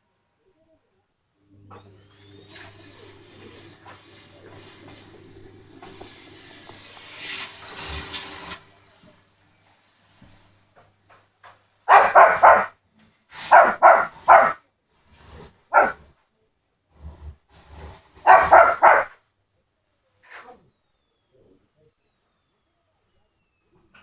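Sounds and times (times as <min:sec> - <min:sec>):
vacuum cleaner hissing: 0:01.5 - 0:16.2, 0:16.9 - 0:19.2
small dog barking: 0:11.9 - 0:12.8, 0:13.4 - 0:14.6, 0:15.7 - 0:16.1, 0:18.2 - 0:19.2.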